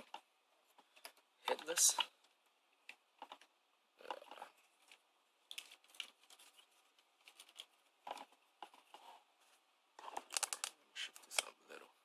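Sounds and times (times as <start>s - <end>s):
plastic toy parts clicking: 10.0s - 11.5s.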